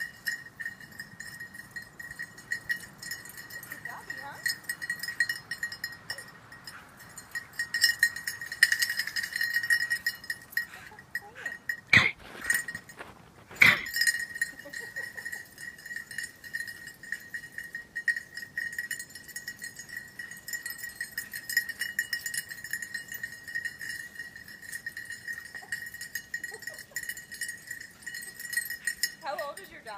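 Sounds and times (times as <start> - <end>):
cowbell clanking: 0.0 - 29.9.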